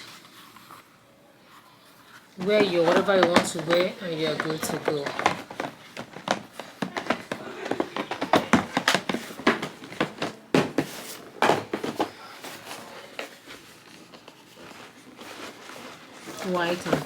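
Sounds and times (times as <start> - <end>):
sneaker packaging clicks and rustles: 1.8 - 17.0.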